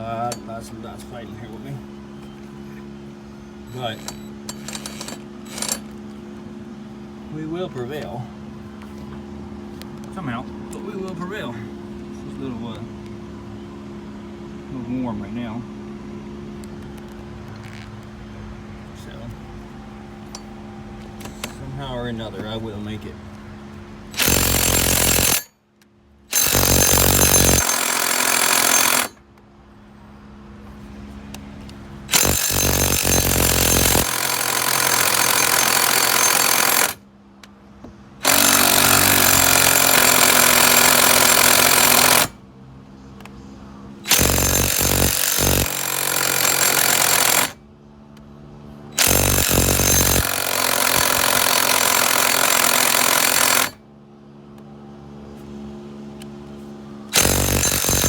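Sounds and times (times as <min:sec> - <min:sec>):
impact wrench hammering: 0:03.7 - 0:05.9, 0:24.2 - 0:25.5, 0:26.3 - 0:29.2, 0:32.1 - 0:37.0, 0:38.2 - 0:42.4, 0:44.1 - 0:47.6, 0:49.0 - 0:53.8, 0:57.2 - 0:58.0.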